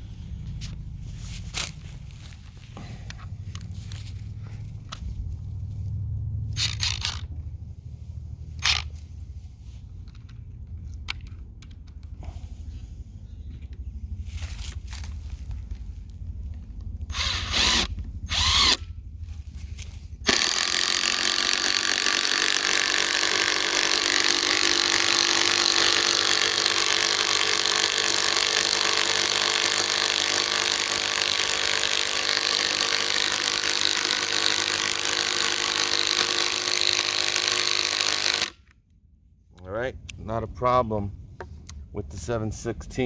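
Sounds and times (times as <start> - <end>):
impact wrench hammering: 20.3 - 38.6.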